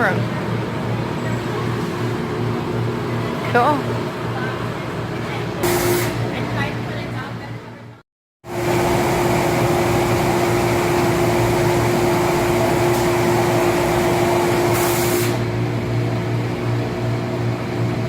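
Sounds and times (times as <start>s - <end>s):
factory machinery droning: 0.0s - 7.5s, 8.5s - 18.0s.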